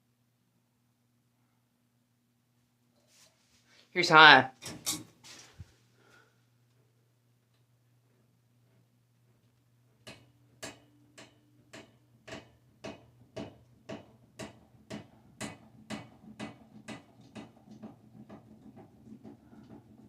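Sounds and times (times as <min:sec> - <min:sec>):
ceiling fan motor hum: 0:00.0 - 0:20.0
ceiling fan ticking: 0:09.5 - 0:20.0.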